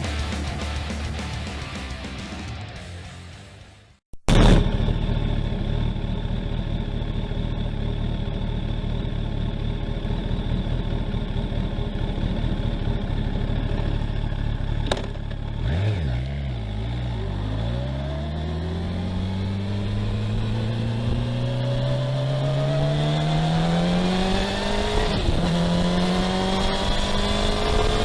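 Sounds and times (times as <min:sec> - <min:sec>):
motorcycle engine idling and revving: 0:00.0 - 0:03.4, 0:04.3 - 0:28.0.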